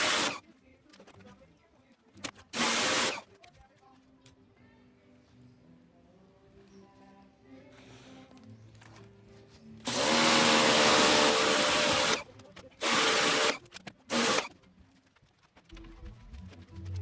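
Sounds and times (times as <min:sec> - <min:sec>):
small electric tool motor hissing: 0:00.0 - 0:00.4, 0:02.6 - 0:03.2, 0:09.9 - 0:12.2, 0:12.8 - 0:14.5.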